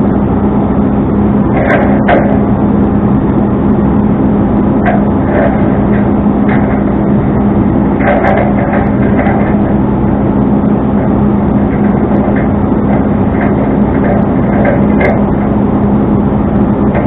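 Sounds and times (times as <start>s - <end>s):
truck engine droning: 0.0s - 17.0s
knocks and rattles: 1.5s - 2.5s, 4.8s - 7.1s, 8.0s - 9.8s, 11.0s - 15.6s.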